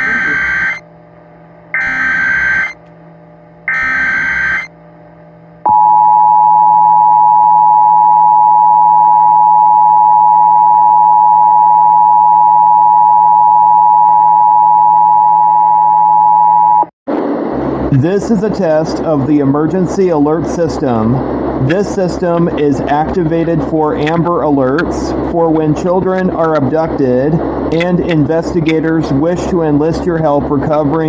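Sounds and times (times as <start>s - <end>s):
digital header bursts: 0.0s - 0.8s, 1.8s - 2.8s, 3.7s - 4.7s
two-tone attention signal: 0.0s - 0.8s, 1.8s - 2.8s, 3.7s - 4.7s.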